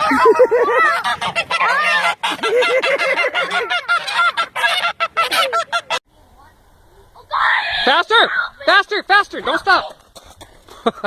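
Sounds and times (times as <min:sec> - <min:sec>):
geese honking: 0:00.0 - 0:06.0.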